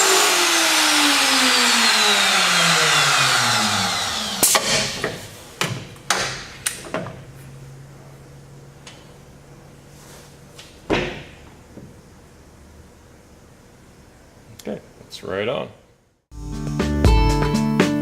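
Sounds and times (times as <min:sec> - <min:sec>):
router winding down: 0:00.0 - 0:05.1.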